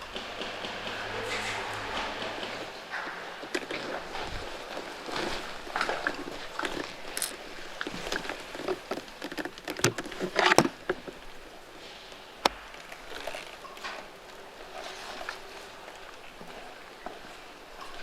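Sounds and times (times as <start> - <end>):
brush and gear rustling: 1.3 - 18.0.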